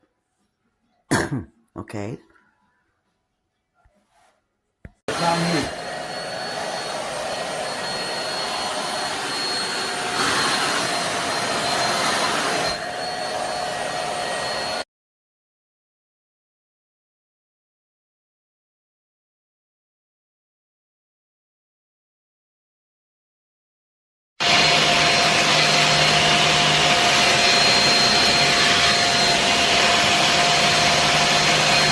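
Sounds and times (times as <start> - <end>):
handheld vacuum cleaner whine: 5.1 - 14.8, 24.4 - 31.9.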